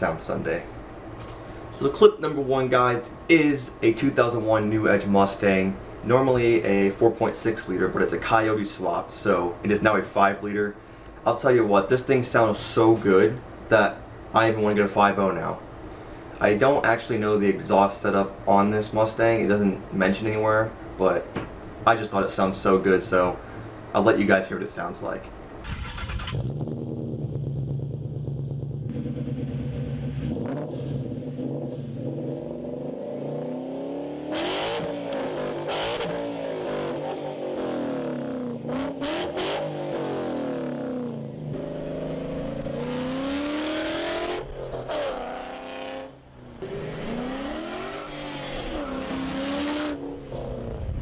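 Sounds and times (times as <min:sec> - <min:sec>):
car engine idling and revving: 0:25.6 - 0:51.0.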